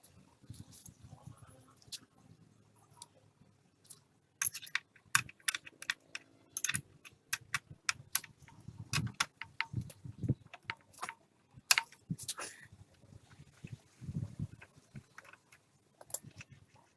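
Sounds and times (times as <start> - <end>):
metal tools clinking: 4.4 - 7.6.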